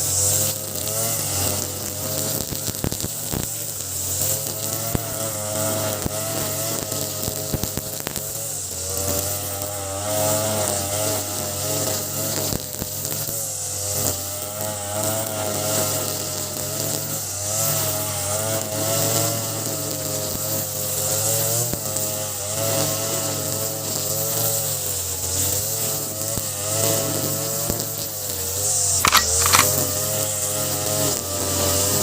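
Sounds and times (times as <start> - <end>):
brush cutter cutting grass: 0.0 - 32.0
sharp ticks: 29.1 - 29.7.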